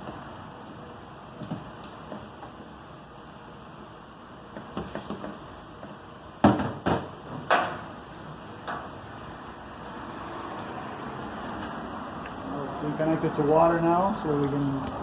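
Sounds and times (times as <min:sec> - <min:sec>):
hoses and fittings clunking: 0:08.6 - 0:09.1.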